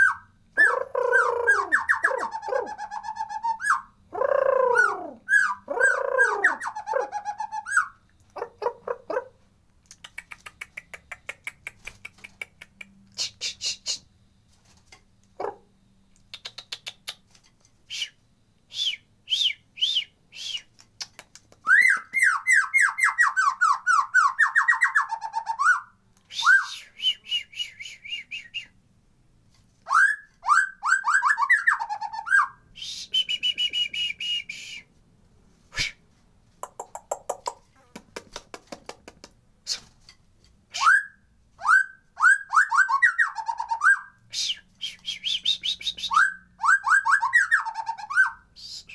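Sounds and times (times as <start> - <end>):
songbird singing: 0.0 - 14.1, 15.2 - 28.8, 40.8 - 48.9.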